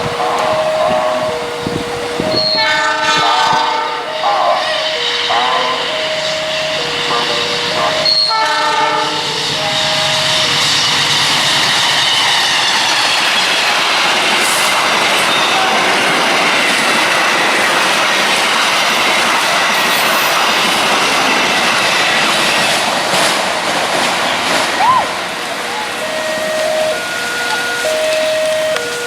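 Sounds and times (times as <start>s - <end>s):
train horn: 0.0s - 11.2s, 14.4s - 16.8s, 24.9s - 29.0s
train wheels rushing on rails: 0.0s - 29.0s.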